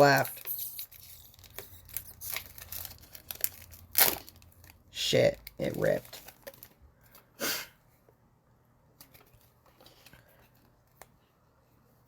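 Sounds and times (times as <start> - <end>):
card wrapper rustling: 0.0 - 7.2.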